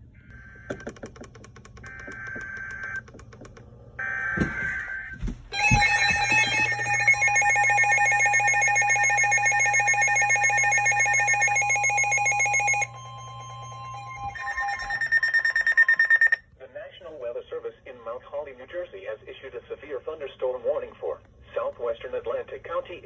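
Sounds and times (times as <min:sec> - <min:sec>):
steady electronic attention tone: 0:05.6 - 0:16.4
warbling data tones: 0:05.8 - 0:16.4.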